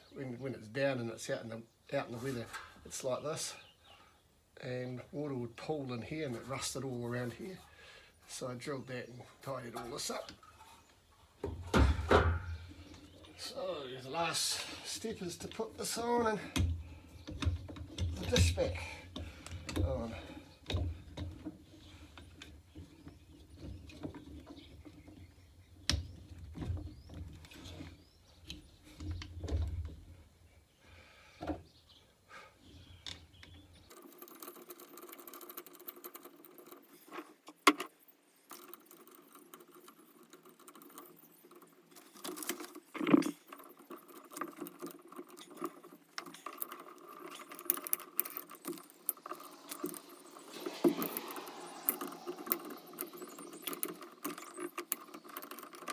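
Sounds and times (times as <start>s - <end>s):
clicks and rattles of fitting parts: 33.1s - 55.9s.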